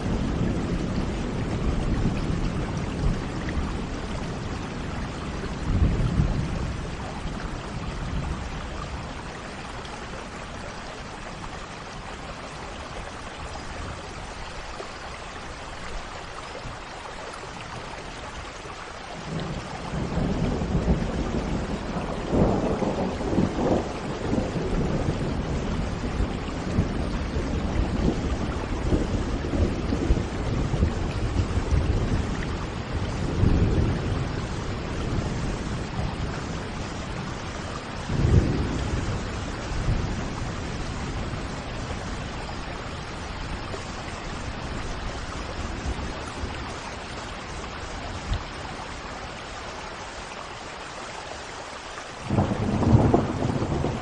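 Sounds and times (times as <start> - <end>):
thunder rumbling: 0.0 - 9.2, 19.3 - 48.4, 52.3 - 54.0
steady rain: 0.0 - 54.0.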